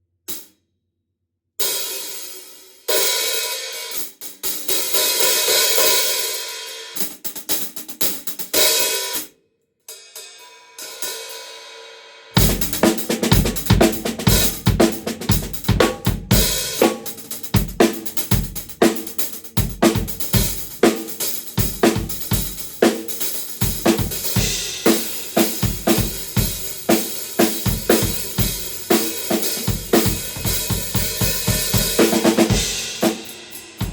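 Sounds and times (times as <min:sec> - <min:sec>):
bass drum and snare beat: 0:12.4 - 0:33.9
hi-hat cymbals ringing: 0:20.3 - 0:33.9.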